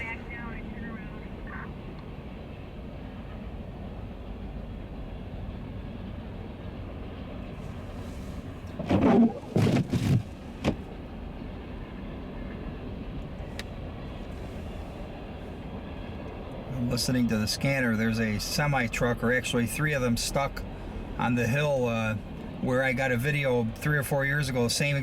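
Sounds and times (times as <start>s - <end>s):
car engine rumble from inside cabin: 6.7s - 25.0s.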